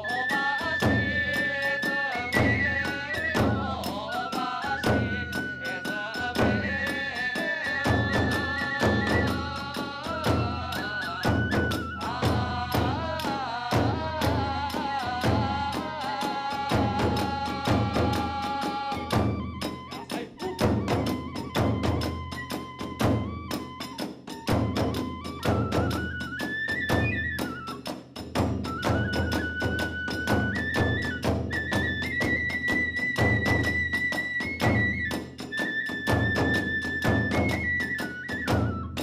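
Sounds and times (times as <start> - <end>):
bamboo flute melody: 0.0 - 39.0
large drum beats: 0.0 - 39.0.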